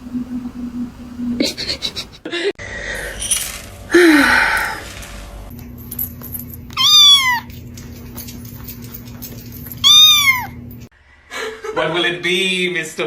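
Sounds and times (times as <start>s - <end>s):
cat meowing: 6.8s - 7.5s, 9.8s - 10.6s.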